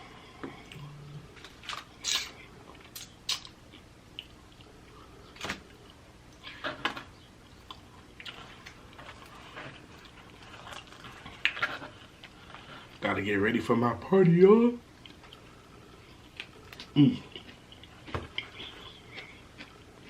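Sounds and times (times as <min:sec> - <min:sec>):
person chewing with mouth clicks: 0:02.0 - 0:05.1, 0:07.5 - 0:13.0, 0:15.0 - 0:20.0.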